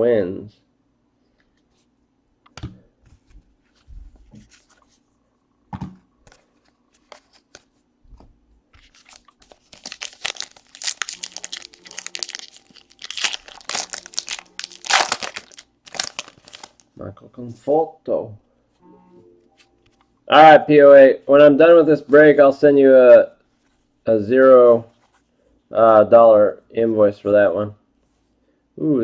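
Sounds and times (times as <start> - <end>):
trading cards handled: 5.8 - 16.9
card pack wrapper tearing and crinkling: 8.8 - 16.9.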